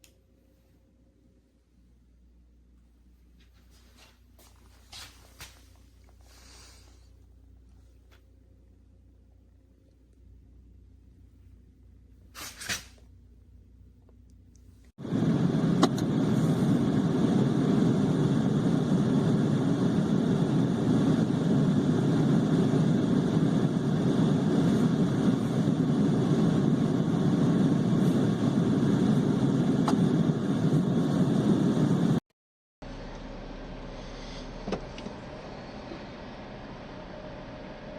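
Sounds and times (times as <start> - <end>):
brief swish: 12.4 - 13.0.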